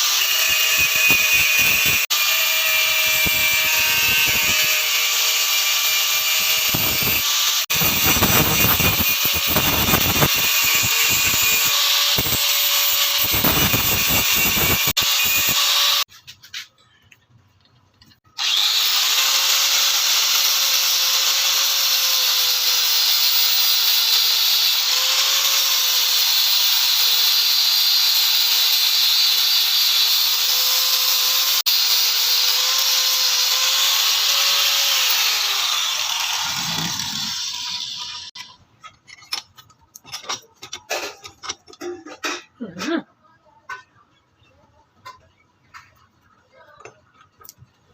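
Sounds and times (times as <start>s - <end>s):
power tool abrasive hiss: 0.0s - 16.1s, 26.0s - 38.4s.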